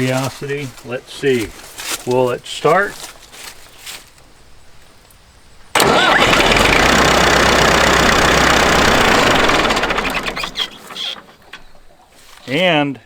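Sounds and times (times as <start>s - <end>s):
diesel tractor engine starting: 5.7s - 12.1s.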